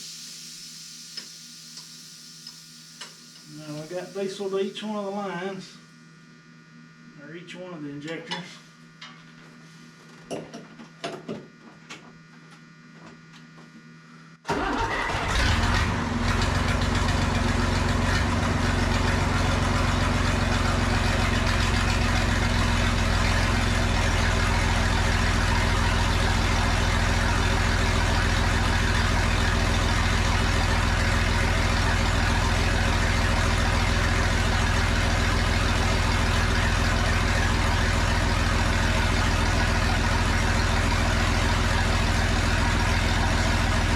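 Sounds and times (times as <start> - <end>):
tractor diesel engine starting and idling: 14.5 - 43.9.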